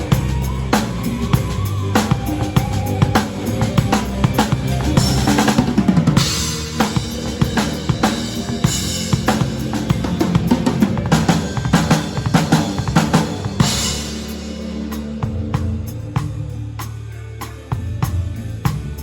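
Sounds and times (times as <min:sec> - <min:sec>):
cymbal ringing: 0:00.0 - 0:17.2
song playing: 0:00.0 - 0:18.5
drum kit groove: 0:00.0 - 0:19.0.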